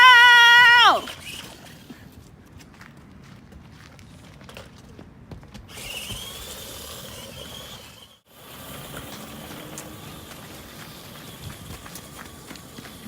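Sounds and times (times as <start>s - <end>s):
toy truck motor whine: 0.0s - 1.9s, 5.7s - 13.0s
wheels on the ground: 0.0s - 13.0s.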